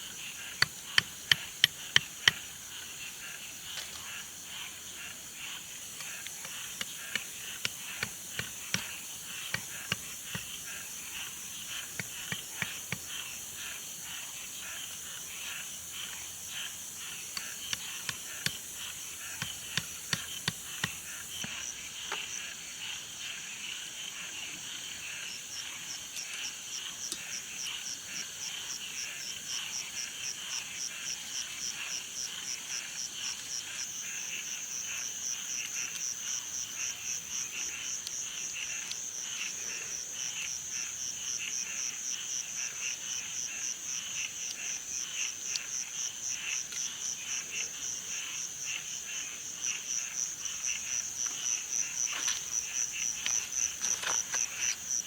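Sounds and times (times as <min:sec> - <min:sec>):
sharp clicks and knocks: 0:00.6 - 0:02.4, 0:06.0 - 0:10.6, 0:17.3 - 0:21.6.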